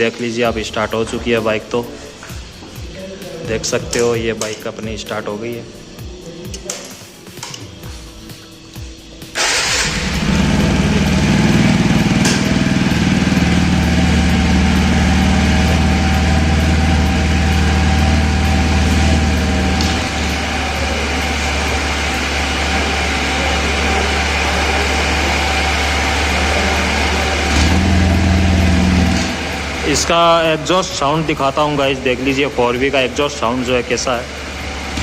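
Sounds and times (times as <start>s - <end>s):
motorcycle engine idling: 7.7s - 35.0s.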